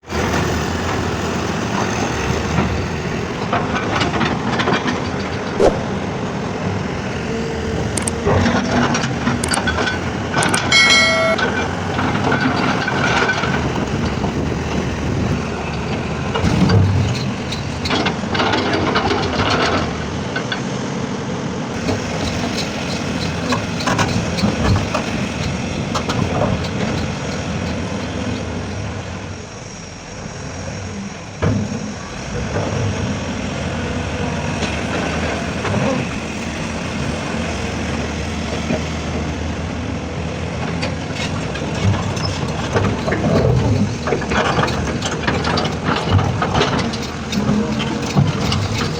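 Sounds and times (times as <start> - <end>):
brief high tone: 10.4 - 11.6
heavy diesel machinery under load: 21.8 - 48.9.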